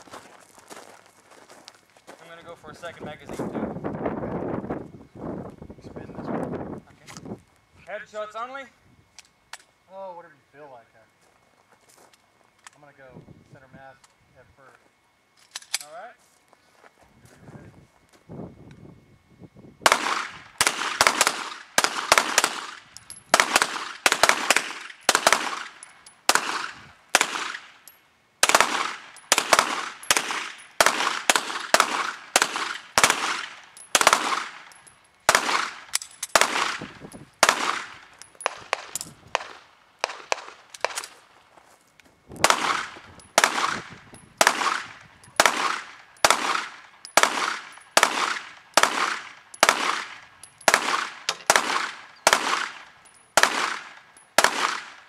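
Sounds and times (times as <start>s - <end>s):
pistol shots echoing: 19.9s - 27.8s, 28.4s - 41.1s, 42.4s - 55.0s.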